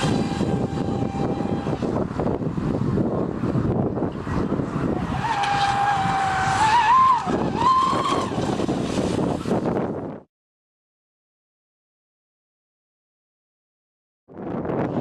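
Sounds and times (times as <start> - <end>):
model boat motor whining: 0.0 - 2.6, 4.1 - 9.1
rushing noise: 0.0 - 9.7.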